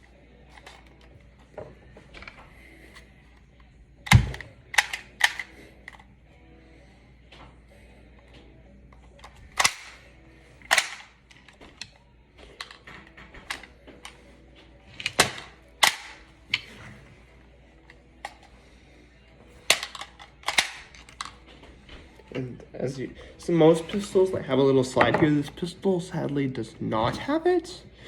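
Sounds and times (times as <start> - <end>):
prop pistol clicking: 4.0 - 6.0, 9.2 - 11.9, 15.0 - 16.7, 19.6 - 21.4.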